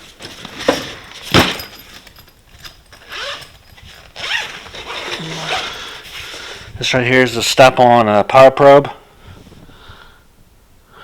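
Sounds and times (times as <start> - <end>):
tools rattling in a tool box: 0.0 - 6.4.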